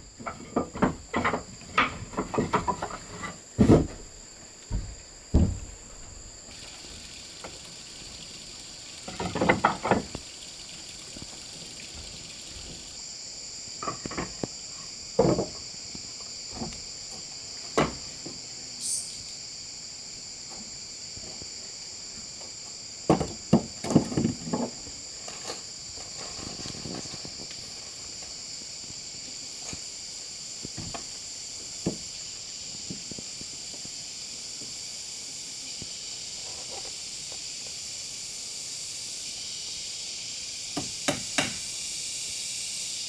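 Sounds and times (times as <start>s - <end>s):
insects chirring: 0.0s - 43.0s
knocks and clatters: 0.2s - 6.4s.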